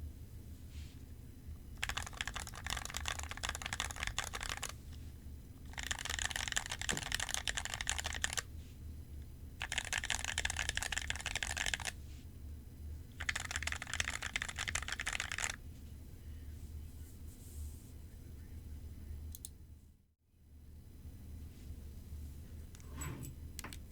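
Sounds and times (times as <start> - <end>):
mechanical keyboard typing: 1.8 - 4.8, 5.6 - 8.4, 9.6 - 11.9, 13.2 - 15.6.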